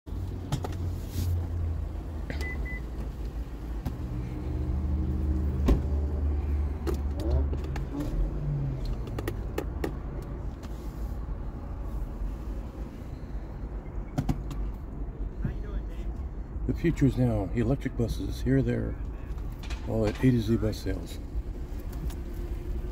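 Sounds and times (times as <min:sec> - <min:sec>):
vehicle engine rumbling: 0:00.1 - 0:22.9
scattered clicks and knocks: 0:08.8 - 0:10.3.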